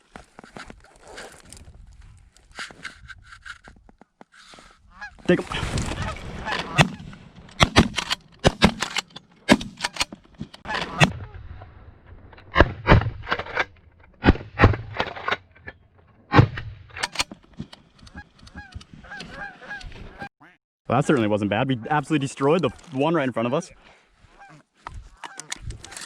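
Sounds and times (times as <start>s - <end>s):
shotguns firing: 5.5s - 10.1s
geese honking: 18.1s - 20.6s, 24.4s - 26.0s.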